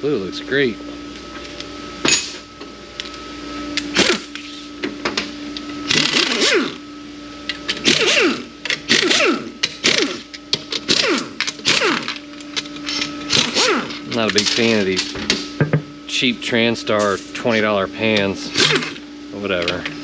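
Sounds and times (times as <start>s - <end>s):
power tool whine: 3.8s - 15.0s, 18.0s - 19.5s.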